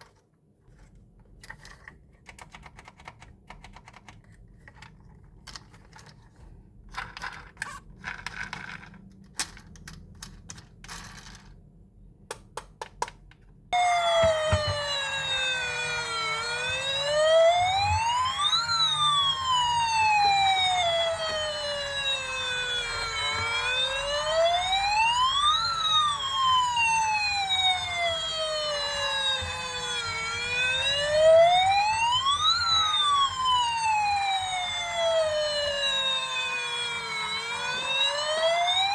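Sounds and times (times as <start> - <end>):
toy electronic siren wailing: 13.8 - 38.9.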